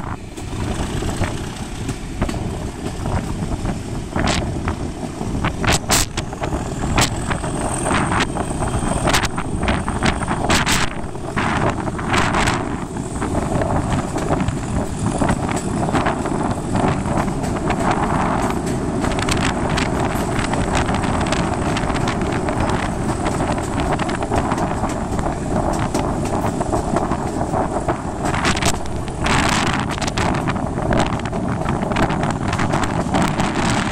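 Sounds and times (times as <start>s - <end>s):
wind buffeting microphone: 0.0s - 33.9s.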